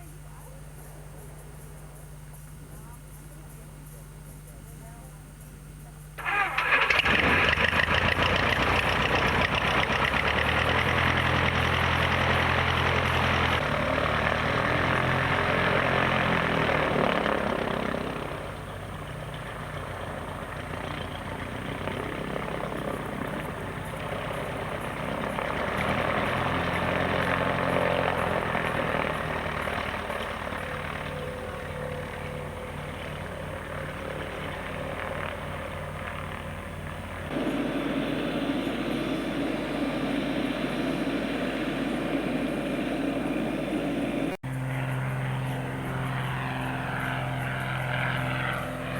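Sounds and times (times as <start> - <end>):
light aircraft engine and propeller: 0.0 - 48.9.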